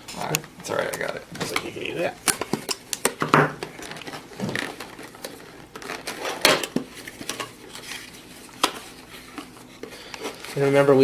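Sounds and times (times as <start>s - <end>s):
packaging being opened: 3.6s - 10.8s.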